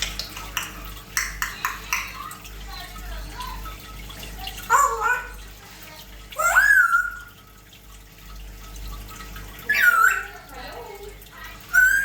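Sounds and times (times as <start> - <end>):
parrot whistling: 6.4 - 7.3, 9.6 - 10.4, 11.7 - 12.0.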